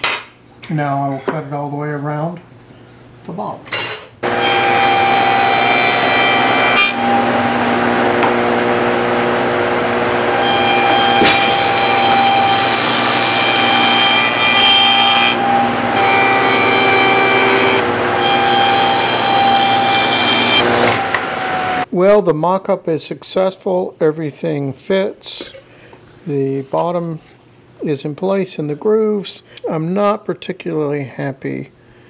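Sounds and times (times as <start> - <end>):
table saw cutting wood: 4.2 - 21.9.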